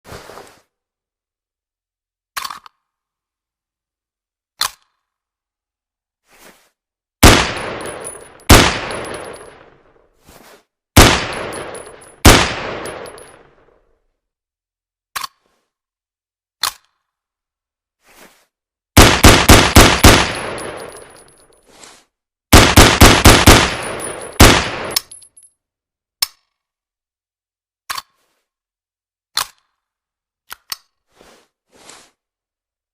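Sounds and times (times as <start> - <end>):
rifle shots with echo: 7.2 - 9.7, 11.0 - 13.3, 19.0 - 21.2, 22.5 - 25.0.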